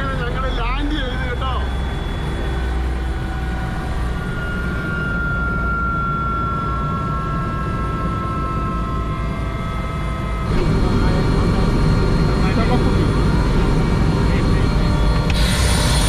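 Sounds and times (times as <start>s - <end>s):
helicopter rumble and whine: 0.0s - 16.0s.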